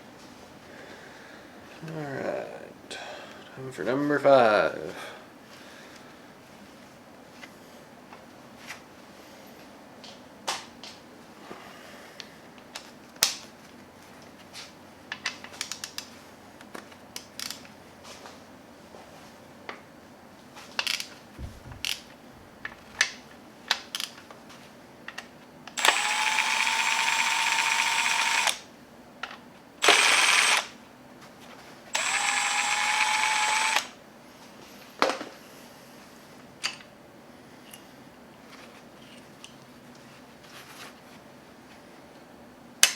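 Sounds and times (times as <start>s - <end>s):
power tool whine: 25.8s - 28.6s, 29.8s - 30.8s, 31.9s - 34.0s.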